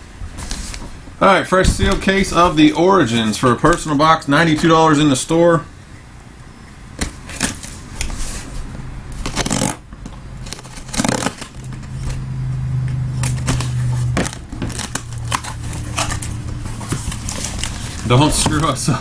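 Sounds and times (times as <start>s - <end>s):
steady low hum: 0.0s - 19.0s
cardboard scrapes and rustles: 0.3s - 1.0s, 1.6s - 3.9s, 7.4s - 9.8s, 13.2s - 19.0s.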